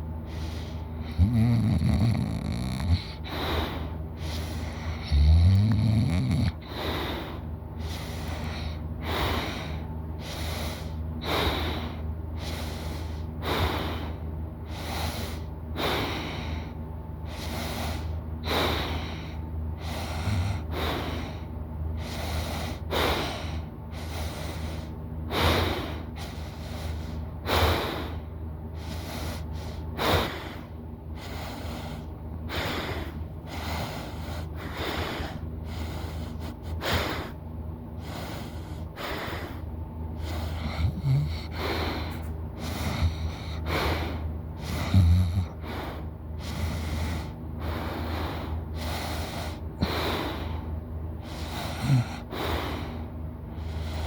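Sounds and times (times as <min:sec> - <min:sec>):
steady low hum: 0:00.0 - 0:54.0
person snoring: 0:00.4 - 0:03.6, 0:04.3 - 0:06.8, 0:40.2 - 0:41.8, 0:44.6 - 0:45.7, 0:51.3 - 0:52.3.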